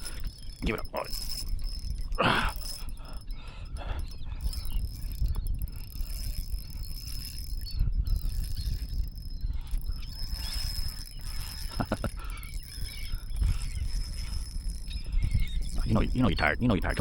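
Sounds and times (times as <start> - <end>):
thin high whine: 0.0 - 17.0
wind rumbling on microphone: 0.0 - 17.0.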